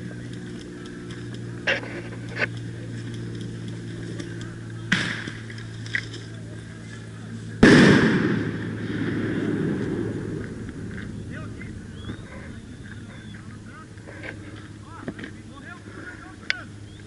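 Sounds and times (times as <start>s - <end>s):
steady low hum: 0.0s - 17.0s
loud burst: 7.6s - 10.7s.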